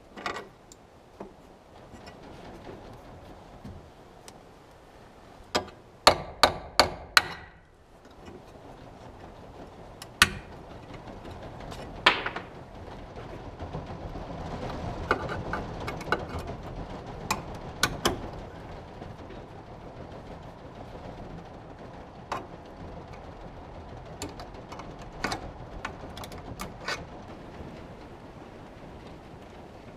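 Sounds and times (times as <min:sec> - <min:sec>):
hammer strikes: 0:05.6 - 0:07.6.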